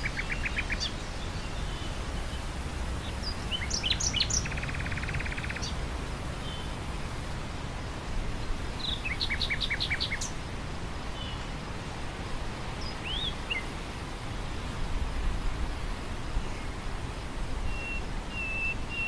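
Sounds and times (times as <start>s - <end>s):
nightingale singing: 0.0s - 1.9s, 3.0s - 5.8s, 8.8s - 10.4s, 12.8s - 13.6s, 17.7s - 19.0s
wind blowing through grass: 0.0s - 19.0s.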